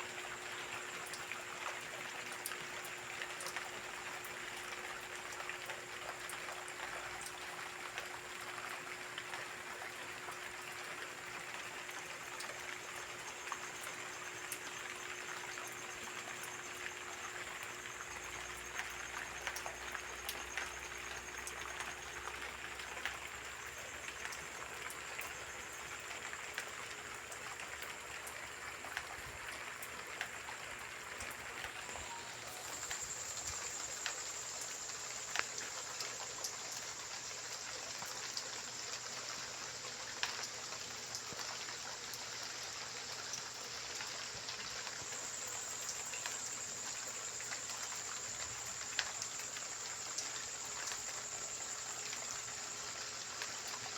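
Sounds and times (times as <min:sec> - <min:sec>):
steady rain falling: 0:00.0 - 0:53.9
raindrops ticking sharply: 0:01.8 - 0:39.1.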